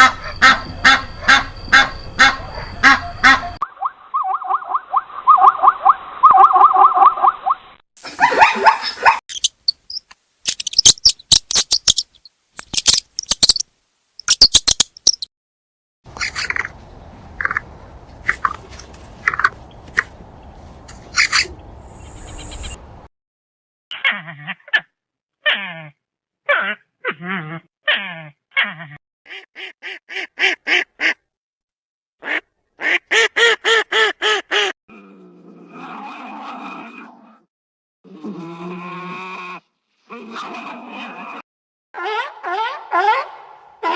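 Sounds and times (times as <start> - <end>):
duck quacking: 0.0 - 3.6, 29.3 - 31.2
sharp high chirps: 9.3 - 13.6, 14.2 - 15.3.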